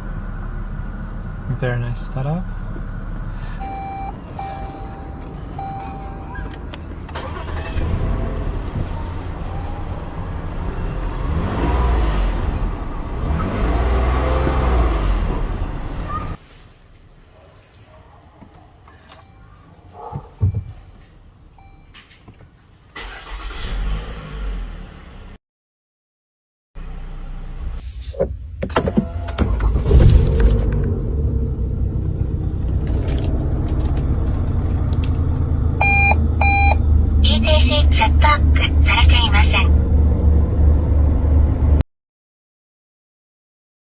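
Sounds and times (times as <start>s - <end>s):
engine rumbling: 0.0s - 17.3s, 26.8s - 41.8s.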